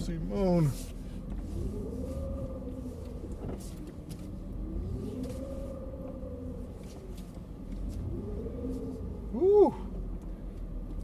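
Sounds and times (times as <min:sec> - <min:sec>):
low engine rumble: 0:00.0 - 0:11.0
suv engine revving: 0:00.0 - 0:11.0.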